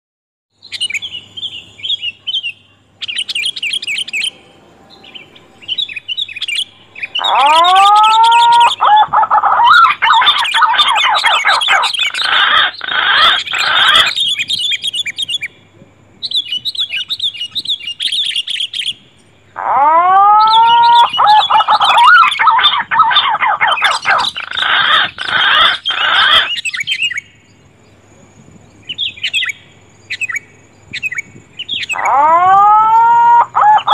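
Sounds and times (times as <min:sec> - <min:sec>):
birds chirping and chattering: 0:00.6 - 0:33.9
faint steady hum: 0:00.6 - 0:33.9
rising whistles: 0:03.2 - 0:15.4, 0:20.0 - 0:27.3.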